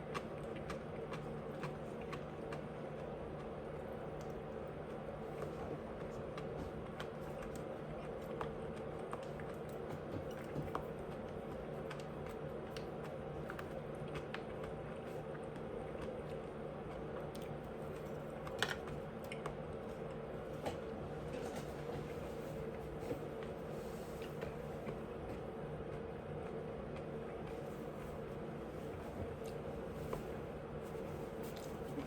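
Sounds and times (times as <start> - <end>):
person chewing: 0.0 - 20.2
steady background hum: 0.0 - 32.0.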